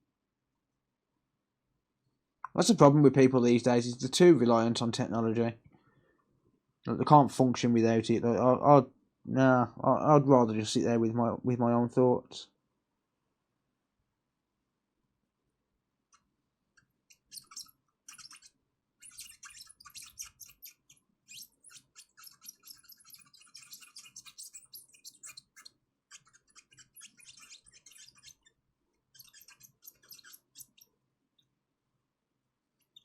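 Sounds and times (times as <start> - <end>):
rapid scratchy clicking: 17.1 - 28.5, 29.1 - 30.8.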